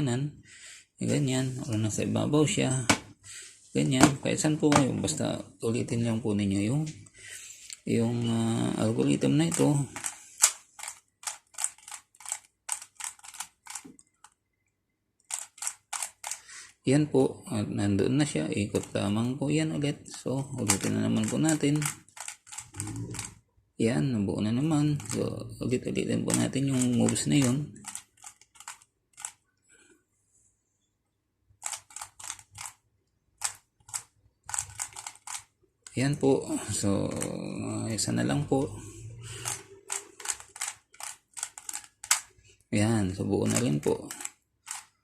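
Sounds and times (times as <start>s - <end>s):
puzzle cube plastic clacks: 26.2s - 29.4s, 31.6s - 32.8s, 33.4s - 36.0s, 39.4s - 42.4s, 43.4s - 45.0s.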